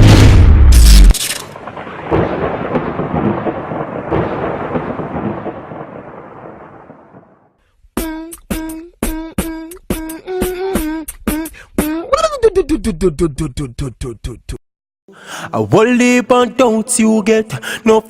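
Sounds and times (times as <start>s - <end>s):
rumbling thunder-like sound effect: 0.0s - 7.5s
beatboxed vocal notes: 8.0s - 14.6s.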